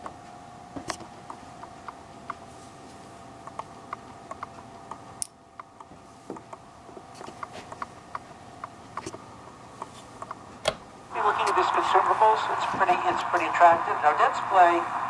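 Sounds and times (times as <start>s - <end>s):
radio static crackling: 11.1s - 15.0s.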